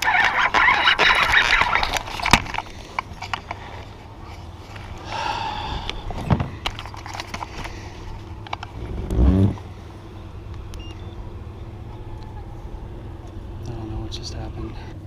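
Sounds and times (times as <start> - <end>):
fishing gear clicks and knocks: 0.0 - 5.0, 6.2 - 7.8.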